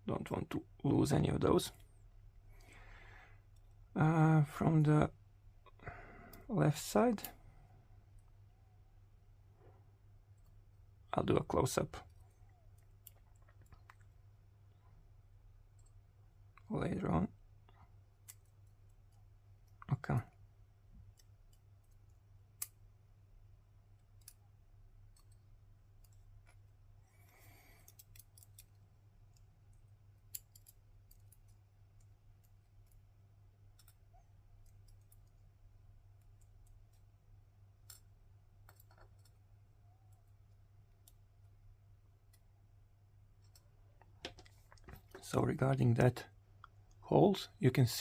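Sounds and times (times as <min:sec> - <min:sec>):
faint low hum: 0:00.0 - 0:48.0
small lock parts clicking: 0:23.9 - 0:41.6.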